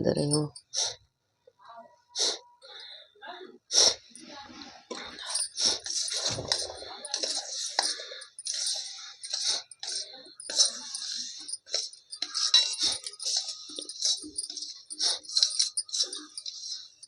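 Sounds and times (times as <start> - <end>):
clinking and scraping: 4.2 - 17.0.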